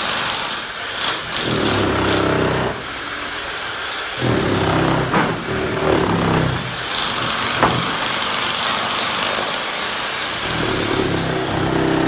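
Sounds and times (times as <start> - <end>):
heavy machinery engine running: 4.2 - 8.7
sharp knock: 5.0 - 8.2.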